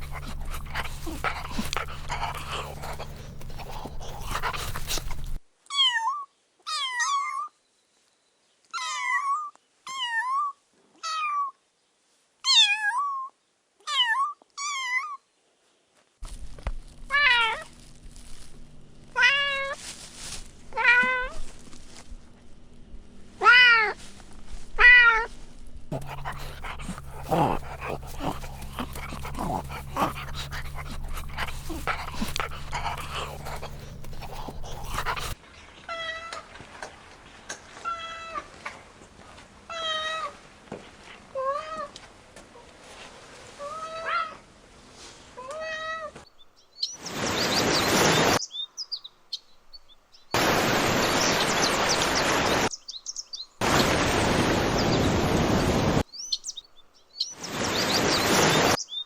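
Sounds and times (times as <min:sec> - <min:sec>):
steady low hum: 0:00.0 - 0:05.4, 0:25.9 - 0:35.4
loud hiss-like noise: 0:50.4 - 0:52.7.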